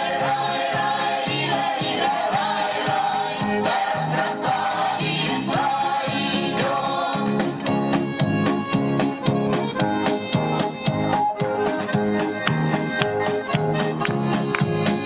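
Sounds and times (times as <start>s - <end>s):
voices singing over instruments: 0.0s - 8.5s
instrumental short chords: 7.7s - 15.0s.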